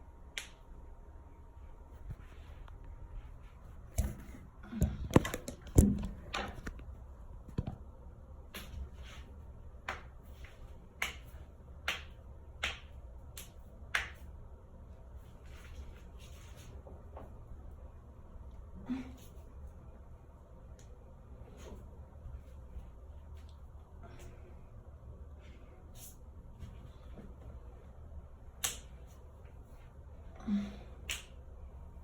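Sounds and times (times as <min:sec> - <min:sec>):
knuckles cracking: 0:31.0 - 0:31.4.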